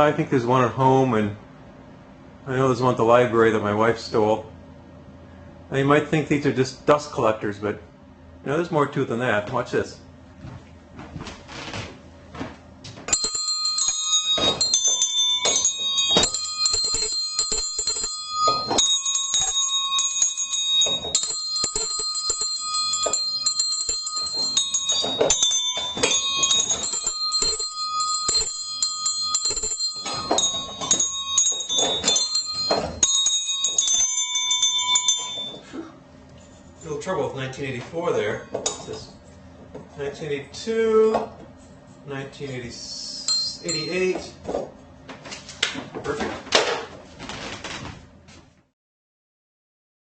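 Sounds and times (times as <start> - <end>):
hand bells ringing: 13.1 - 35.7, 43.2 - 44.3.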